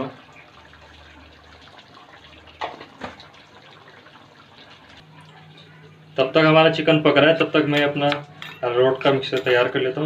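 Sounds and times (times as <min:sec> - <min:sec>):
gravy simmering in a pan: 0:00.0 - 0:06.0.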